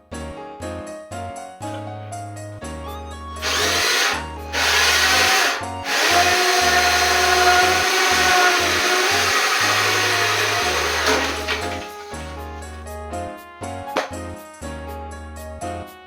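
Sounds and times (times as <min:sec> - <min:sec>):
background music: 0:00.0 - 0:16.0
handheld power tool running: 0:03.4 - 0:12.8.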